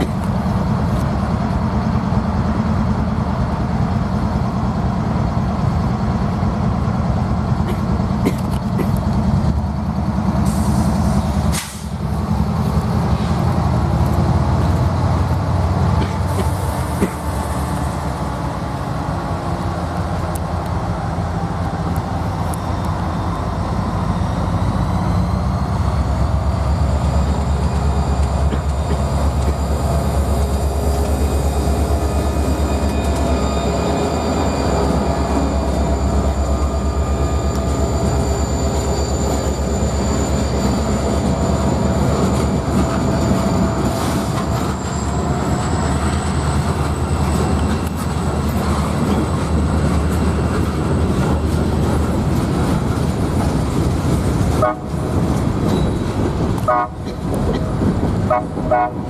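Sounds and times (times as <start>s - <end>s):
freight train rumbling on rails: 0.0s - 59.0s
high wheel squeal: 24.1s - 52.0s, 55.6s - 56.3s.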